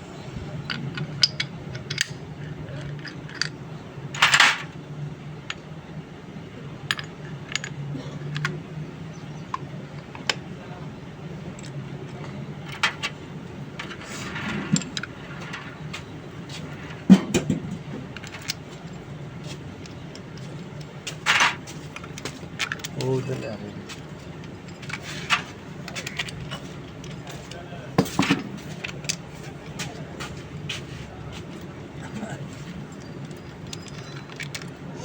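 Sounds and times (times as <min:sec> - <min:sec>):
steady low hum: 0:00.0 - 0:35.0
metal tools clinking and tapping: 0:00.6 - 0:02.2, 0:04.2 - 0:04.7, 0:11.6 - 0:13.2, 0:13.8 - 0:19.0, 0:19.8 - 0:30.8, 0:31.5 - 0:34.8.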